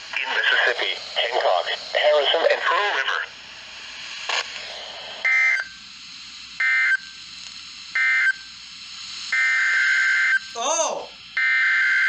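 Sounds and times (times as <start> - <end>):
faint radio hiss: 0.0 - 9.3.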